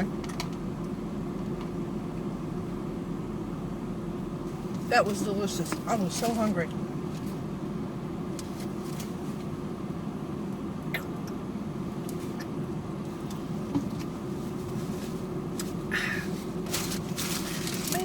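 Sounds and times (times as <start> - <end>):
car idling hum: 0.0 - 18.0
short rustle: 14.3 - 18.0.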